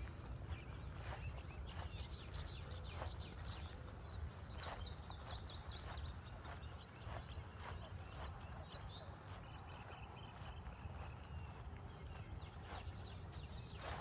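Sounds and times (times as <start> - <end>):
footsteps on trail: 0.0 - 14.0
songbird chirping: 0.4 - 14.0.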